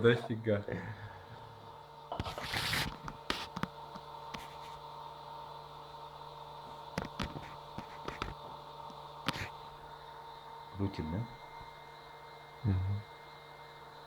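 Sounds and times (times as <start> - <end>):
printer electrical whine: 0.0 - 14.0
light clicks and taps: 7.0 - 9.5.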